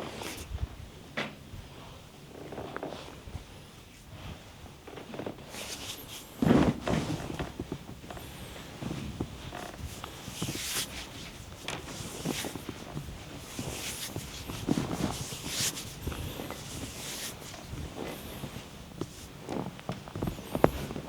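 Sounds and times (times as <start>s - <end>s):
hands rubbing skin: 5.5s - 6.4s, 9.5s - 19.4s
soft pats and thumps: 8.8s - 21.0s.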